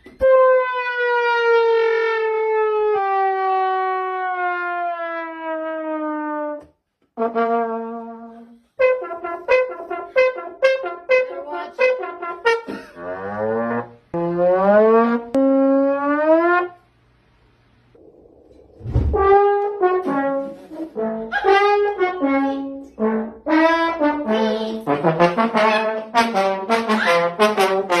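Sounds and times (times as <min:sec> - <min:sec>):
comic trumpet notes: 0:00.1 - 0:16.8, 0:19.1 - 0:28.0
low thud: 0:18.0 - 0:20.2.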